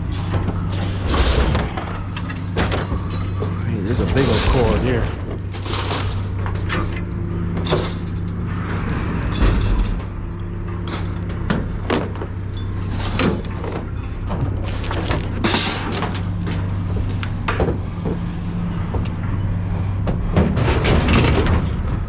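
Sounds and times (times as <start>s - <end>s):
scrap metal clanking: 0.1s - 16.8s.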